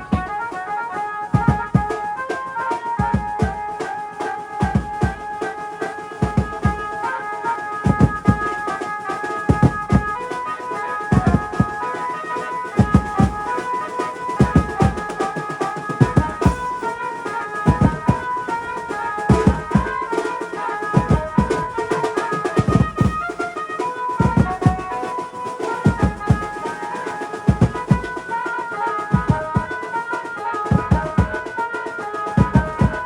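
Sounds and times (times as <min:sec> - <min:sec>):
dance music with drum beat: 0:00.0 - 0:00.6, 0:04.5 - 0:05.5, 0:07.8 - 0:08.6, 0:09.5 - 0:10.2, 0:11.1 - 0:11.8, 0:14.4 - 0:17.1, 0:17.7 - 0:23.6, 0:24.2 - 0:26.8, 0:27.4 - 0:28.4, 0:30.7 - 0:31.7, 0:32.4 - 0:33.0.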